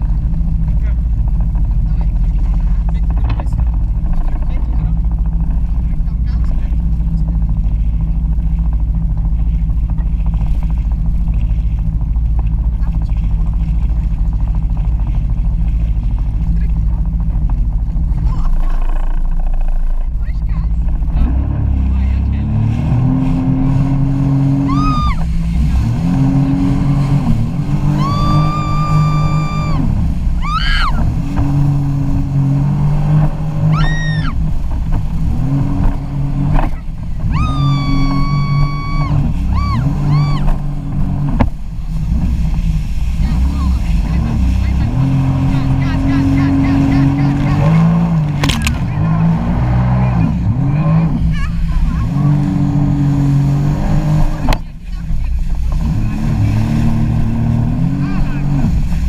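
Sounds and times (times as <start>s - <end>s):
jet ski engine rumbling: 0.0s - 59.0s
high-pitched engine layer: 21.6s - 34.4s.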